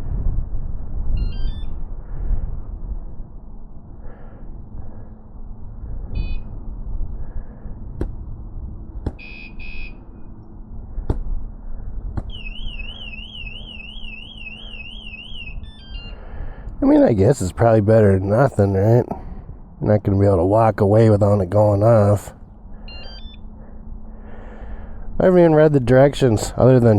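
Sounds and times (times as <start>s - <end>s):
low rumble: 0.0s - 26.9s
warbling alarm siren: 1.0s - 2.0s, 5.9s - 6.8s, 9.2s - 10.8s, 11.8s - 16.4s, 22.7s - 24.1s
motorcycle alarm beeps and chirps: 1.1s - 1.8s, 6.1s - 6.5s, 9.2s - 10.3s, 12.3s - 16.2s, 22.8s - 23.5s.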